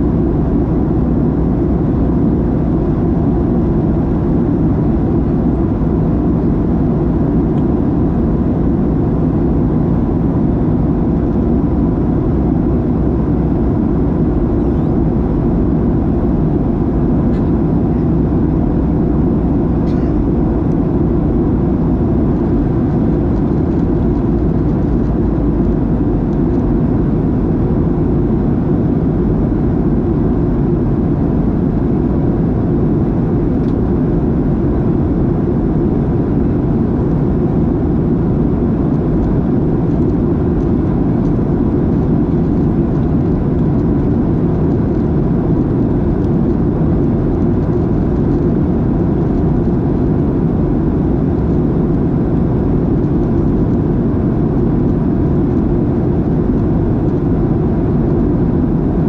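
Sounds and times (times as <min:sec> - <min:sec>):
airplane cabin airflow and engine noise: 0:00.0 - 0:59.0
faint constant hum: 0:00.0 - 0:59.0.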